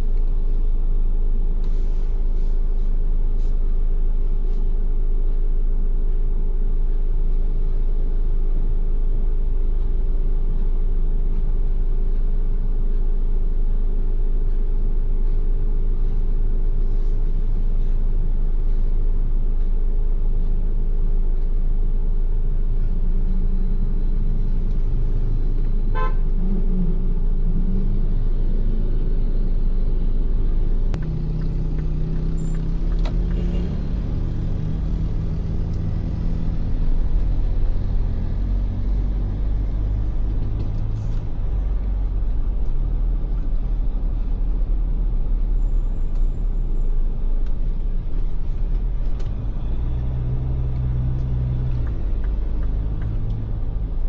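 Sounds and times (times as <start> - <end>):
car engine and road rumble: 0.0 - 54.0
car horn toot: 25.9 - 26.3, 33.2 - 33.8.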